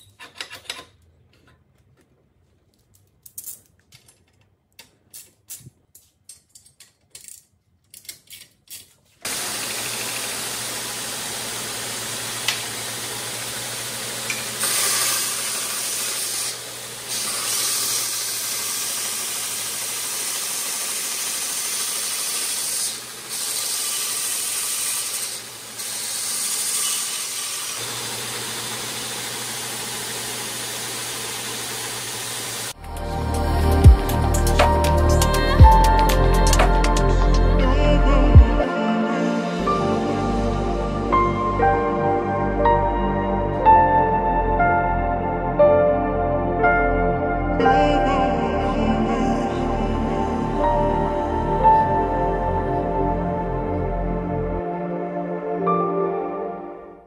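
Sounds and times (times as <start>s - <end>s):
belt grinder running: 9.2s - 36.6s.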